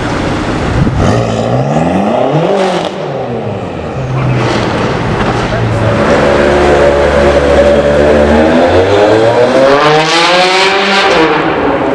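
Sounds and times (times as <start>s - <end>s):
car engine revving: 0.0s - 11.9s.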